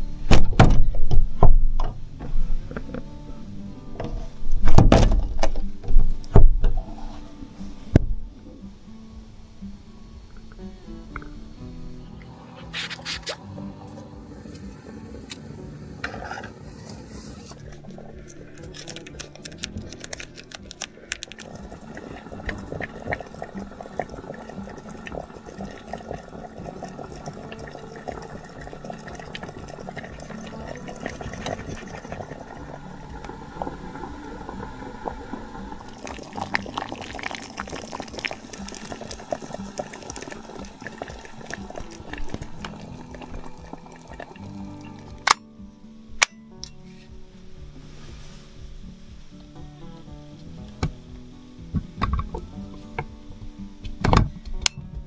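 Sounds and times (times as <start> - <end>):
water bubbling in a pot: 10.4 - 45.3.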